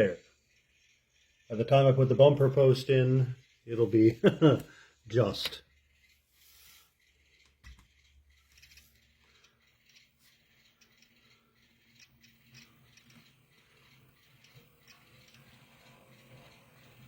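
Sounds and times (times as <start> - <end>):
model train clicks and ticks: 0.0 - 6.2, 7.0 - 17.0
faint motor hum: 0.0 - 17.0.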